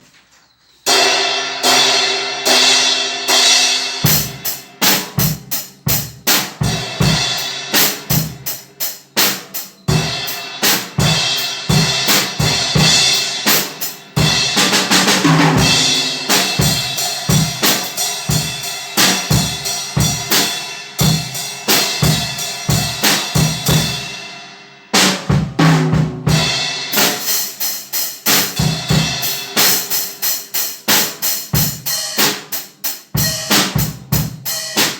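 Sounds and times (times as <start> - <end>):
drum kit groove: 0.9 - 34.9
cymbal crash: 15.6 - 17.1.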